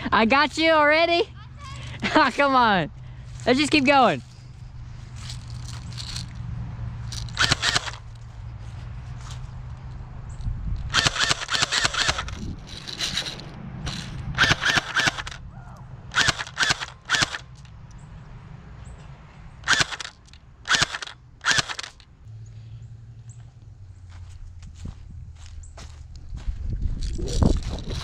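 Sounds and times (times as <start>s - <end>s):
airsoft guns firing bursts: 7.4s - 8.0s, 10.9s - 12.4s, 14.4s - 15.4s, 16.1s - 17.4s, 19.6s - 20.1s, 20.7s - 22.0s.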